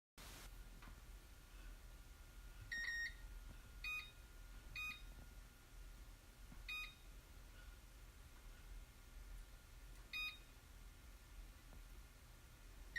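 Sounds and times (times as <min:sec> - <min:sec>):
faint steady hum: 0:00.2 - 0:12.9
microwave control panel beeping: 0:02.7 - 0:03.2, 0:03.8 - 0:04.2, 0:04.8 - 0:05.2, 0:06.6 - 0:07.1, 0:10.1 - 0:10.6.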